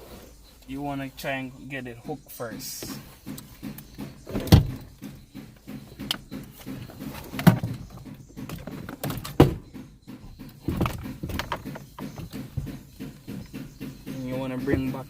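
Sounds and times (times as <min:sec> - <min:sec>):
heavy metal knocks and clunks: 0:01.1 - 0:15.0.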